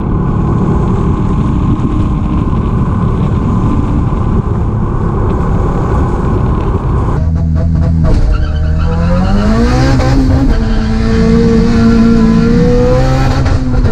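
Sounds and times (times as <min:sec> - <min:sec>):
motorcycle engine deep rumble: 0:00.0 - 0:08.3.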